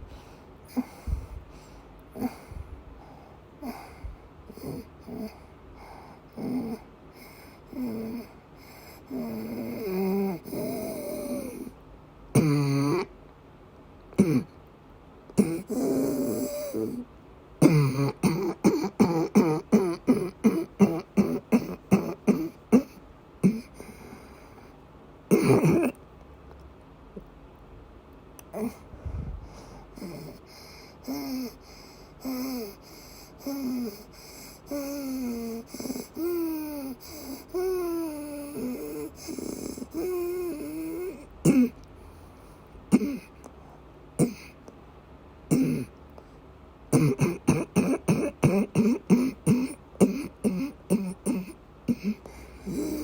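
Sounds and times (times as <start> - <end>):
woman coughing: 17.6 - 23.7, 25.3 - 26.0, 42.9 - 43.3, 44.2 - 44.6, 45.5 - 45.9, 47.0 - 52.2.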